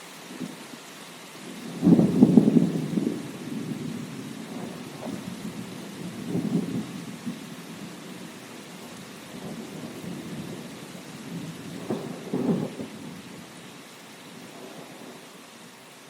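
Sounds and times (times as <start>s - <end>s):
steady rain: 0.0s - 16.0s
thunder rumbling: 1.4s - 13.5s.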